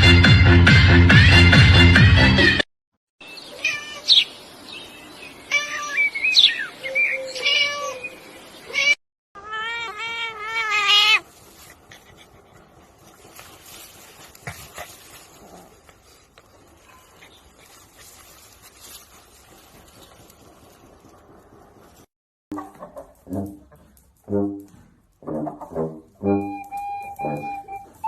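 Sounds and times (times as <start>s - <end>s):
cat meowing: 7.3s - 8.1s, 8.7s - 11.2s.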